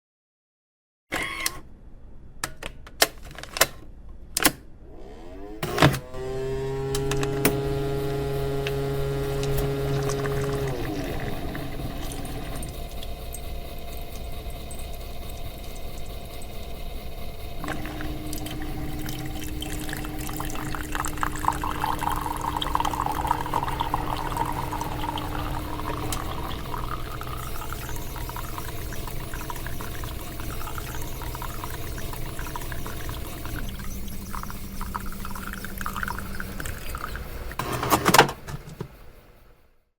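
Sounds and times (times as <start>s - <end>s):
coffee machine pump humming: 5.0s - 39.2s
coffee pouring into cup: 7.1s - 38.6s.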